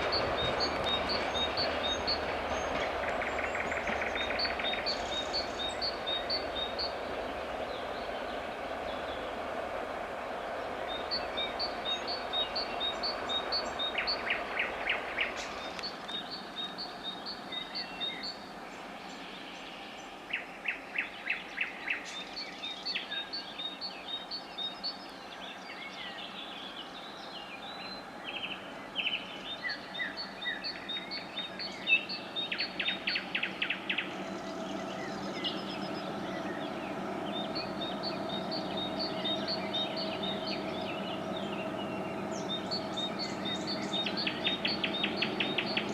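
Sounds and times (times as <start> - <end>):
songbirds chirping and trilling: 0.0 - 45.9
steady hum: 32.6 - 45.9.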